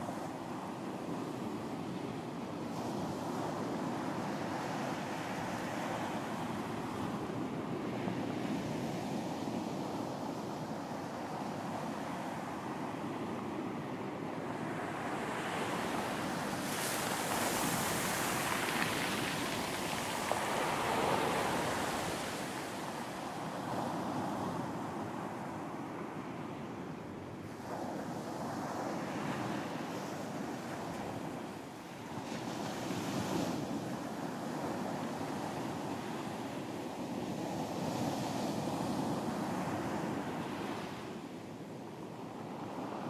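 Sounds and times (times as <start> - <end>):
waves breaking on beach: 11.5 - 25.6.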